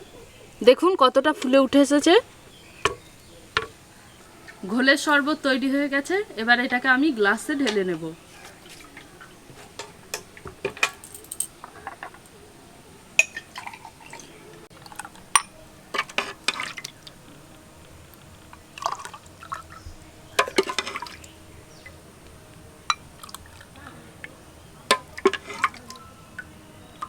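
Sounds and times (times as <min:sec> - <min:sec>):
frothy drink pouring into glasses: 0:07.4 - 0:27.0
glass clinking: 0:09.8 - 0:12.4, 0:13.2 - 0:17.1, 0:22.8 - 0:23.6.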